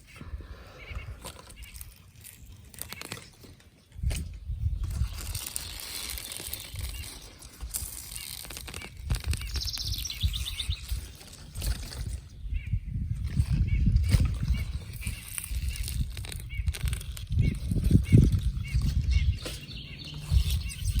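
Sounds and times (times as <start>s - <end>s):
wild birds singing: 0.0s - 21.0s
rapid high bird trill: 4.9s - 21.0s.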